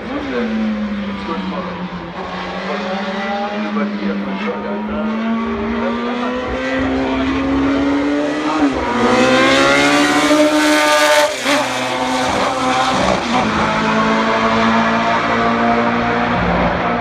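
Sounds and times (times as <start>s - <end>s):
racing engine at full throttle: 0.0s - 17.0s.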